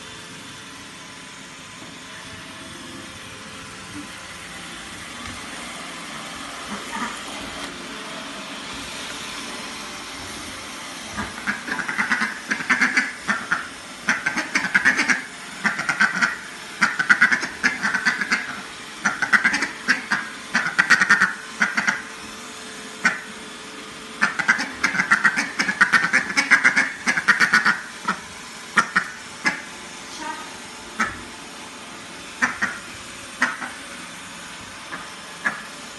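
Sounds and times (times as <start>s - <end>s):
vacuum cleaner running: 0.0s - 35.9s
duck quacking: 11.4s - 22.0s, 24.2s - 28.2s, 28.8s - 29.6s, 32.4s - 32.8s.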